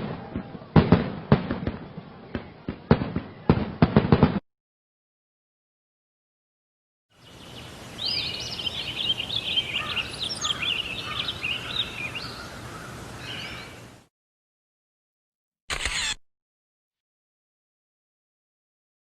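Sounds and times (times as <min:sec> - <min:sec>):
birds chirping: 0:07.1 - 0:14.0
steady background hiss: 0:07.2 - 0:14.1.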